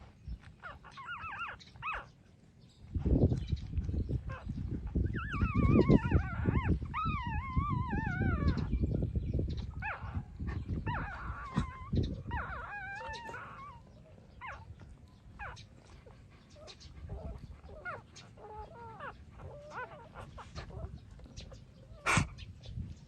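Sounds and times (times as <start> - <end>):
puppies whining: 0.0 - 2.2, 3.0 - 23.0
rustle of movement: 9.5 - 23.0.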